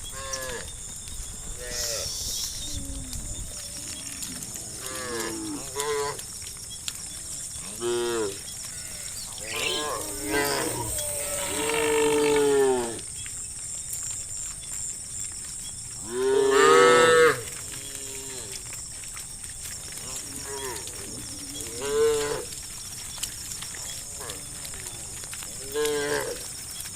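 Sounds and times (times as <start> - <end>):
cows mooing: 3.6 - 6.2, 7.7 - 13.0, 25.6 - 26.5.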